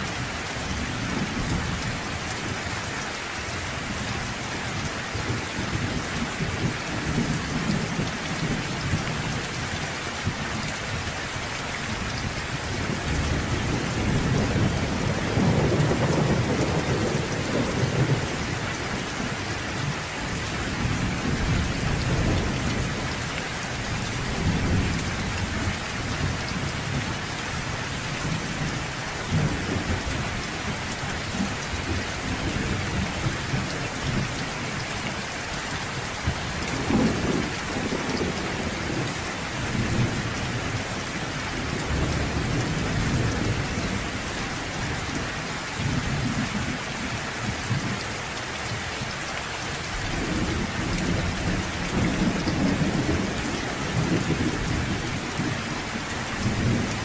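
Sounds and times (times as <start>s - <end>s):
heavy rain hissing: 0.0s - 57.0s
thunder rumbling: 13.0s - 19.3s.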